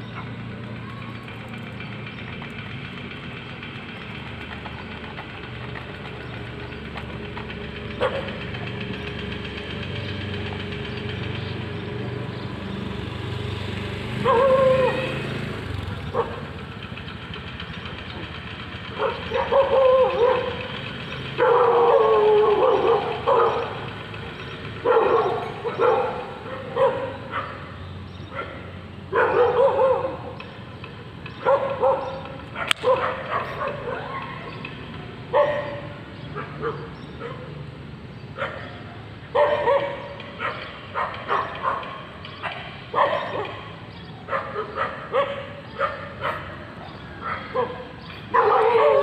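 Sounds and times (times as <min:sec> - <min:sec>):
dog barking and yelping: 0:14.2 - 0:15.1, 0:19.0 - 0:20.7, 0:21.4 - 0:23.8, 0:24.8 - 0:27.7, 0:28.3 - 0:30.4, 0:31.4 - 0:34.6, 0:35.3 - 0:37.5, 0:38.4 - 0:49.0.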